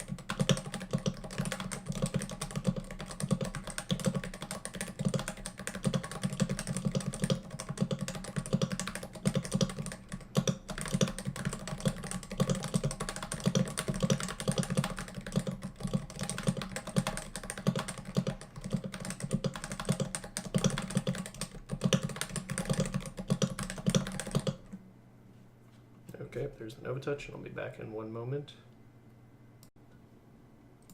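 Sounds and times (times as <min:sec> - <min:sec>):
fast typing on keyboard: 0:00.0 - 0:24.7.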